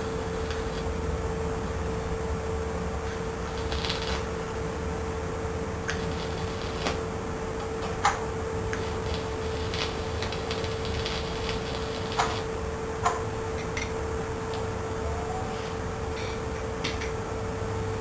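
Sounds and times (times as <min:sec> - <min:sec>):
welding arc cracks: 0:00.0 - 0:01.1, 0:03.0 - 0:04.5, 0:05.8 - 0:14.8
steady hum: 0:00.0 - 0:18.0.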